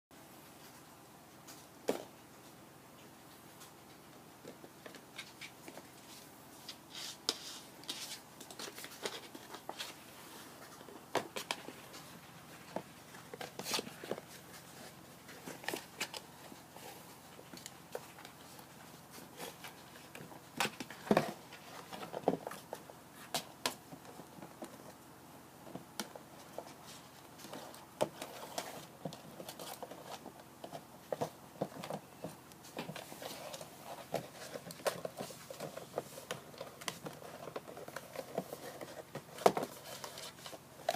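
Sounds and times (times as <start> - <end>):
paws scratching and tapping: 25.6 - 40.9.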